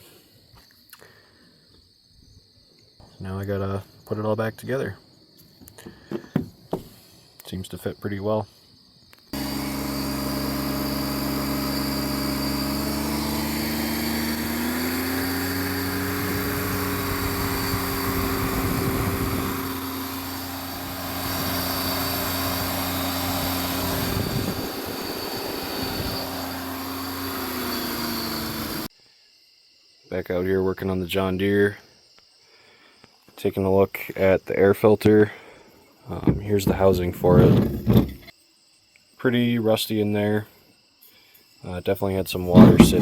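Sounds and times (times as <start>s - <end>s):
engine running: 9.4s - 28.9s, 36.3s - 38.3s, 42.5s - 43.0s.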